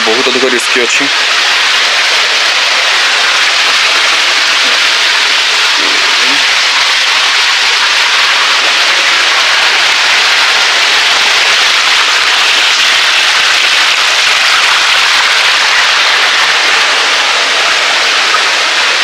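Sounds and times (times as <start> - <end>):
waterfall rushing into pool: 0.0 - 19.0.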